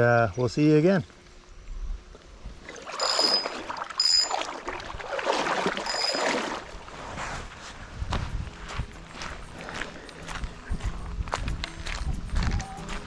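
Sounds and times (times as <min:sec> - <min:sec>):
water sloshing and splashing: 0:02.6 - 0:07.6
short high squeaks: 0:03.0 - 0:04.5.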